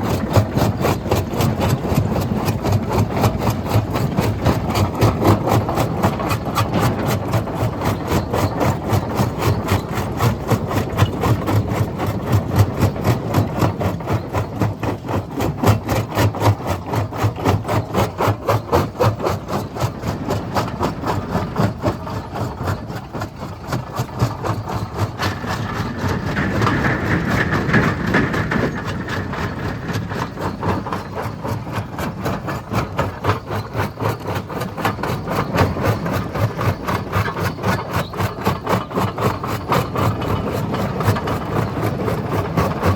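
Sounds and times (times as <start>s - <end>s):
stone crusher churning: 0.0s - 42.9s.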